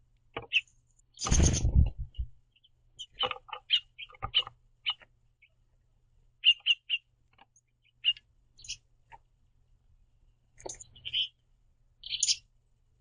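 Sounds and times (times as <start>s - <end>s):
finches chirping: 0.4s - 5.6s, 6.4s - 8.9s, 10.6s - 11.4s, 12.0s - 12.5s.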